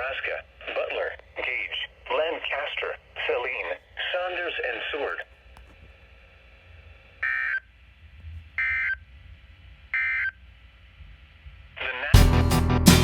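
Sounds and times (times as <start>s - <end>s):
guitar-led music: 12.2s - 13.0s.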